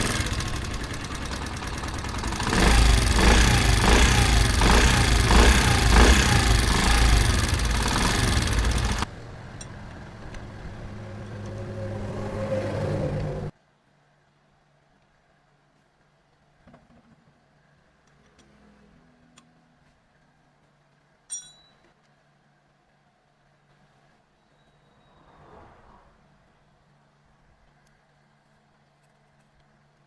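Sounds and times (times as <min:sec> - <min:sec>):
engine knocking: 0:00.0 - 0:09.1
motorcycle engine running: 0:00.0 - 0:09.1.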